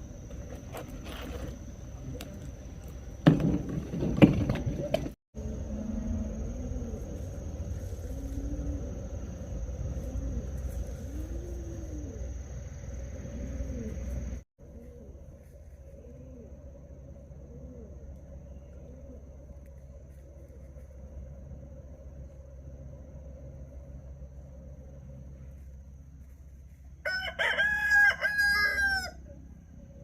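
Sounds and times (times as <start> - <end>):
loud clattering knocks: 3.2 - 5.1
steady machine hum: 5.4 - 27.1.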